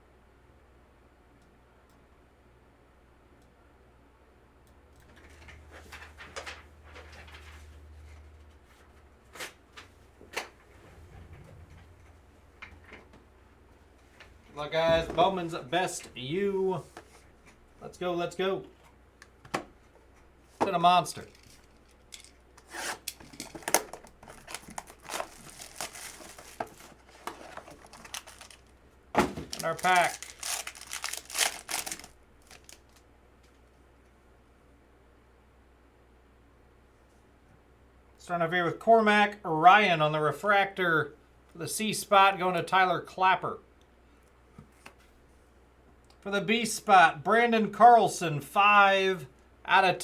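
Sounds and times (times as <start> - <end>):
wrappers rustling and crinkling: 21.1 - 33.0.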